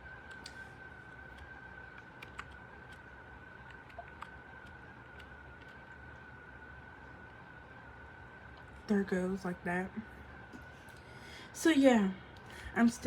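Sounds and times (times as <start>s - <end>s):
keyboard keys clicking: 1.3s - 3.0s.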